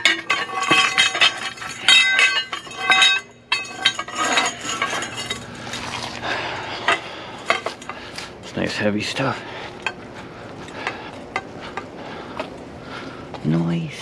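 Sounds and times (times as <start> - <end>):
scrap metal clanking: 0.0 - 8.4.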